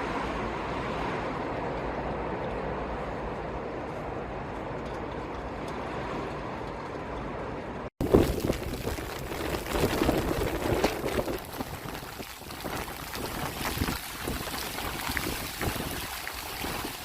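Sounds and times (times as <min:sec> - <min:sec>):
hurricane wind and rain: 0:00.0 - 0:17.0
wind buffeting microphone: 0:08.0 - 0:17.0.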